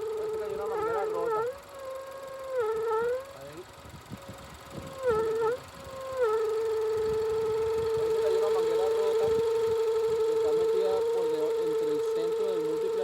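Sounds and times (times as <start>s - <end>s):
engine whining tone: 0.0s - 13.0s.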